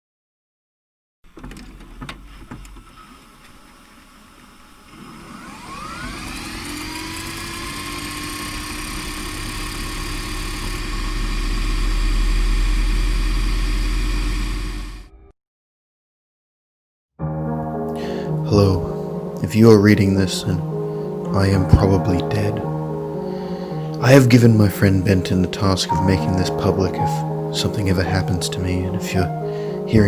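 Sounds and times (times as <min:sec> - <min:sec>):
machine whine and hum: 0:04.6 - 0:15.2
deep rumble: 0:10.8 - 0:15.3.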